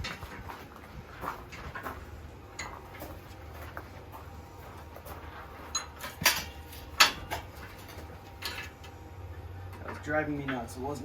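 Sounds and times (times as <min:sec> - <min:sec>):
metal tools clinking: 0:05.6 - 0:08.8.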